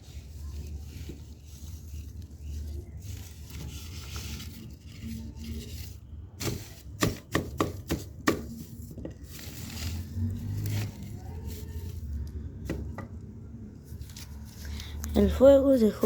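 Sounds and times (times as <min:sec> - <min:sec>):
burning paper crackling: 0:00.0 - 0:12.8.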